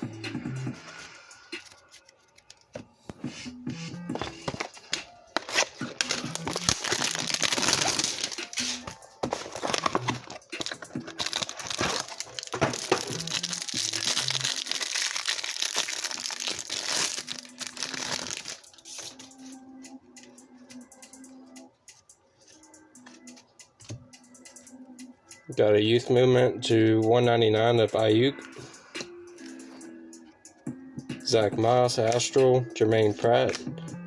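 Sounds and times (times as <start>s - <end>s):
faint background music: 0.0s - 34.0s
plastic wrapping crinkling: 4.5s - 19.1s.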